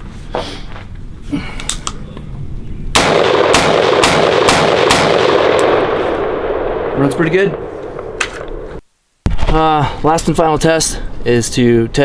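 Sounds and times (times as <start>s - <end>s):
rifle shots: 3.0s - 9.4s.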